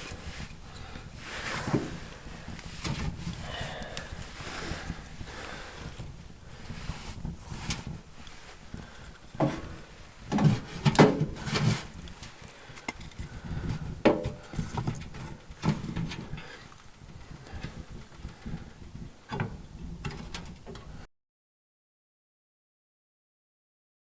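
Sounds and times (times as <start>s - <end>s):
hard objects knocking and clattering: 12.8s - 16.4s.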